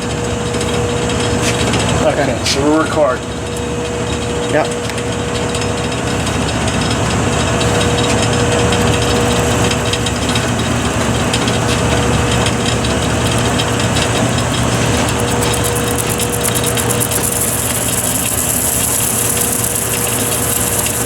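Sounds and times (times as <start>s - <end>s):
lathe motor humming: 8.6s - 21.0s
thin steady whine: 8.6s - 21.0s.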